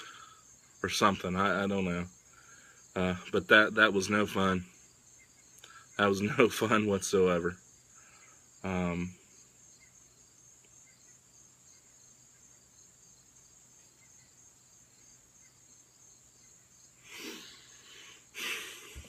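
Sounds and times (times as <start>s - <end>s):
insects trilling: 0.0s - 19.0s.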